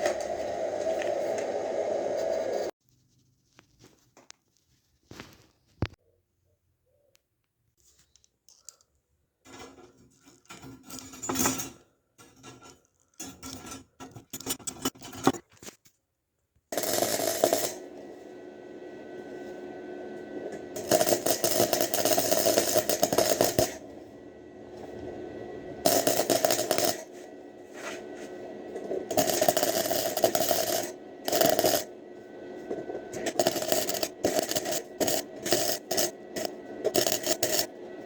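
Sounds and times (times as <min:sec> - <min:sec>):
metal tools clinking and scraping: 0:09.5 - 0:15.4
electric power tool cutting metal: 0:16.8 - 0:38.0.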